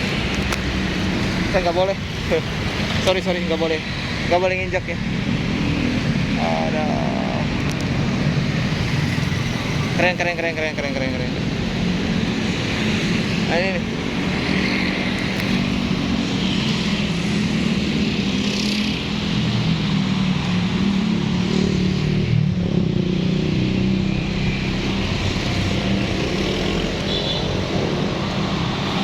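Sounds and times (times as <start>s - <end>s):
motorcycle engines running: 0.0s - 29.0s.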